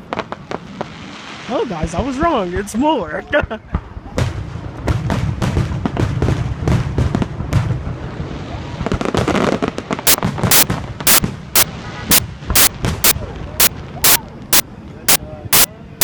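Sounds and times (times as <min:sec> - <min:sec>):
fireworks booming and cracking: 0:00.0 - 0:02.8, 0:03.6 - 0:14.6.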